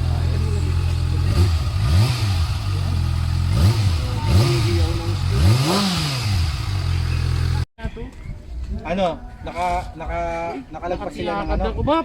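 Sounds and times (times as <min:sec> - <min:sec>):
motorcycle engine idling and revving: 0:00.0 - 0:07.7.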